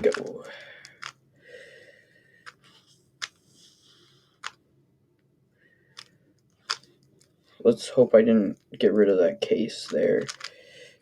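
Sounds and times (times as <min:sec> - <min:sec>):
rubik's cube plastic clicks: 0:00.0 - 0:01.2, 0:04.4 - 0:04.6, 0:05.9 - 0:07.3, 0:09.8 - 0:10.6.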